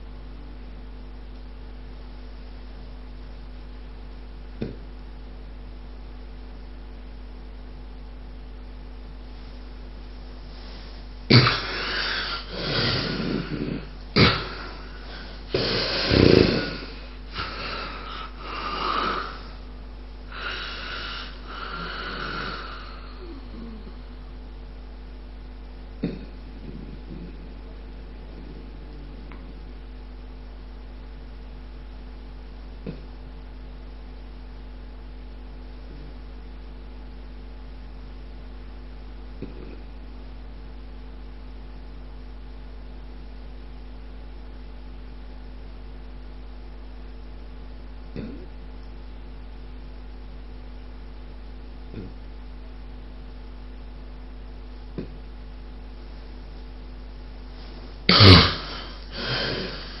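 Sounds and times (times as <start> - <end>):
steady low hum: 0.0 - 60.0
loud snort: 10.6 - 19.6, 20.3 - 24.0, 26.0 - 27.6, 57.6 - 60.0.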